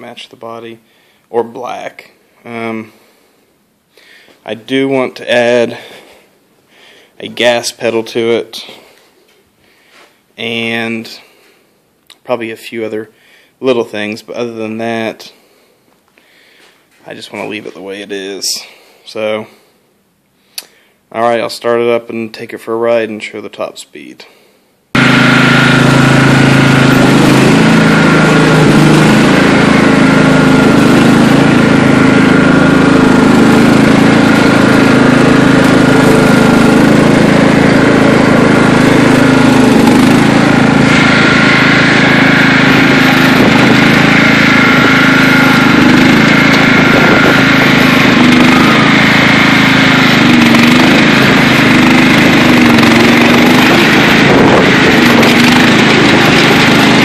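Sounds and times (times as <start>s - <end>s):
lawn mower engine running: 4.4s - 6.2s, 25.0s - 57.0s.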